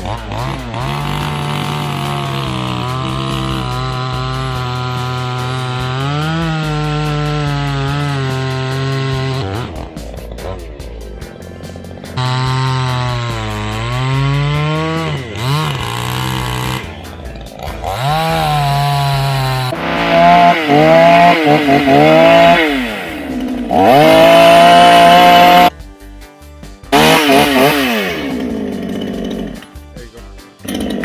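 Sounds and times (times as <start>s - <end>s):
chainsaw engine revving: 0.0s - 25.7s, 26.9s - 31.0s.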